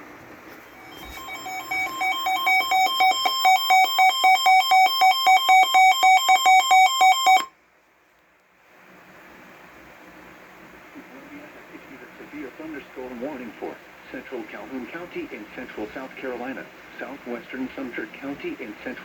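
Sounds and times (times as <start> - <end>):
pulsing alarm beeps: 0.8 - 7.5.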